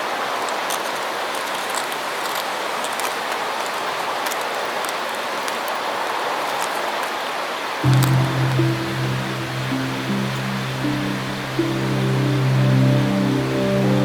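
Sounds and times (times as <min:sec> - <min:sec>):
river rushing: 0:07.8 - 0:14.0.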